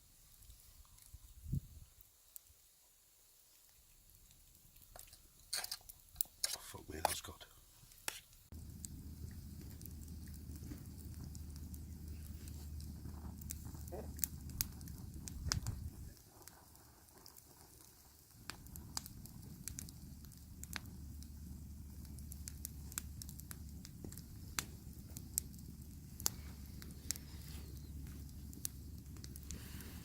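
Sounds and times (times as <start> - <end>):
low fire rumble: 0.0 - 2.4, 4.1 - 30.0
campfire crackling: 0.0 - 30.0
sharp fire pops: 7.9 - 30.0.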